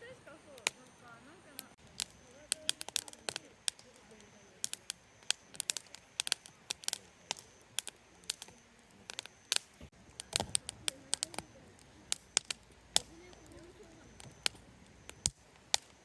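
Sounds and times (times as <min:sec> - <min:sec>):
fire pops and snaps: 0:00.0 - 0:16.0
wood fire crackling: 0:00.0 - 0:16.0.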